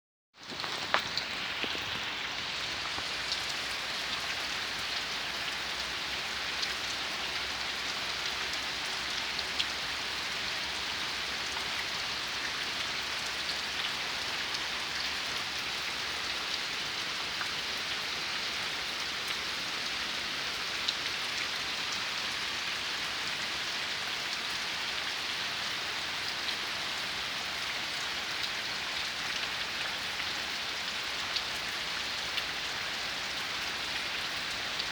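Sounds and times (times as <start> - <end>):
raindrops ticking: 0.4 - 10.0
rain falling: 0.4 - 34.9.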